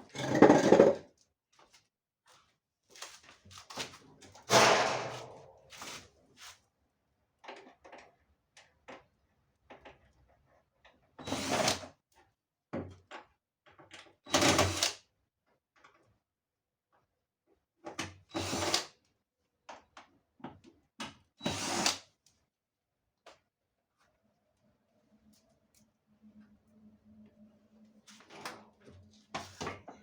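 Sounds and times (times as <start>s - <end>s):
loud clunks on dryer: 4.5s - 5.4s.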